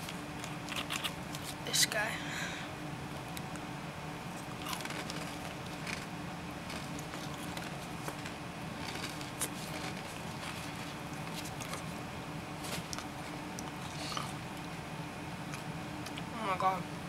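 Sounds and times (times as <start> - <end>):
cookie being chewed: 0.0 - 1.6, 4.3 - 12.0, 12.6 - 14.8
steady low hum: 0.0 - 17.0.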